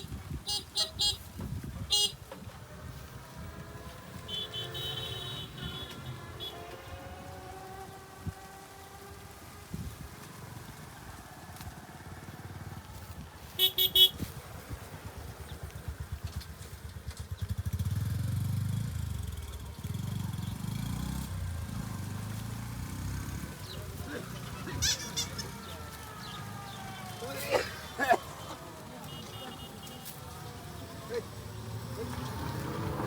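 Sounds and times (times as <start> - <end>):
horn beeps: 0.0 - 1.3, 1.9 - 2.2, 4.2 - 7.4, 13.6 - 14.2, 24.4 - 32.8
vehicle engine running: 0.0 - 33.0.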